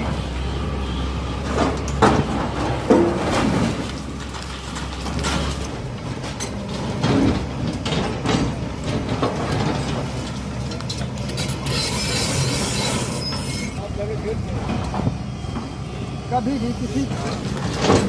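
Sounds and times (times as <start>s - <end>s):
bulldozer engine rumble: 0.0s - 18.0s
metallic clanks and knocks: 6.2s - 11.8s.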